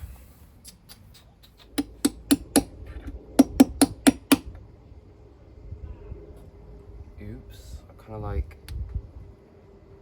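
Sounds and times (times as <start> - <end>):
hammer striking metal: 1.8 - 2.8, 3.4 - 4.5.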